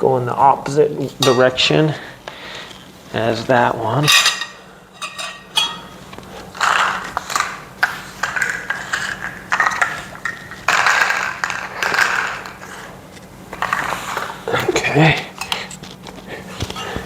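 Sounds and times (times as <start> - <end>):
metal tubes scraping and clicking: 4.0 - 5.9, 6.6 - 12.9.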